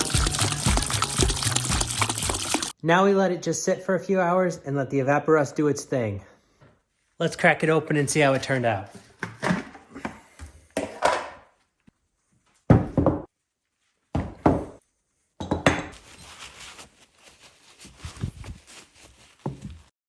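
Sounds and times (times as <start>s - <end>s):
scraping and rustling: 16.0s - 19.9s.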